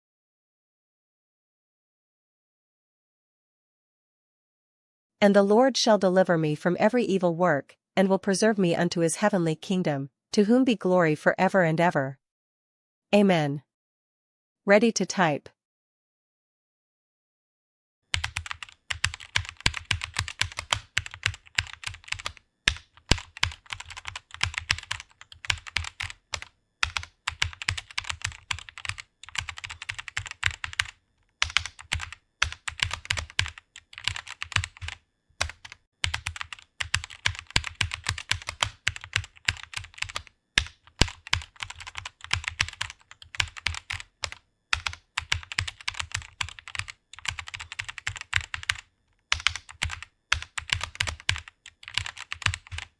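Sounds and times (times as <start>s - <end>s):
fast typing on keyboard: 18.1s - 52.9s.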